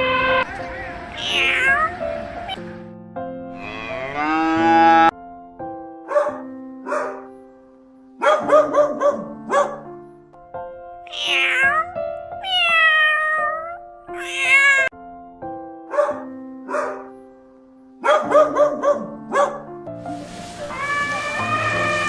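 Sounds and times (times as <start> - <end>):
background music with held notes: 0.0 - 22.0
cat meowing: 12.4 - 14.9, 20.4 - 22.0.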